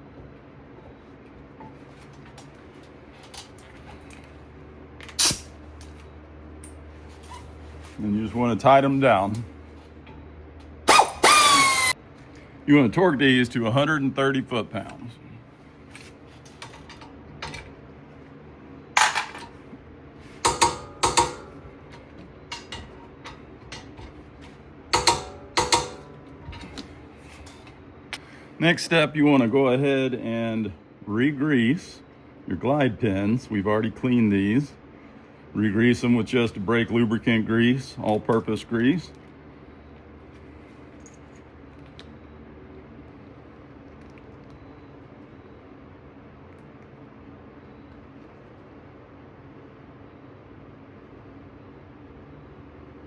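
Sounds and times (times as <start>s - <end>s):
torque wrench clicking: 5.1s - 5.5s, 10.9s - 12.0s
torque wrench ratcheting: 5.2s - 5.5s, 10.9s - 12.0s.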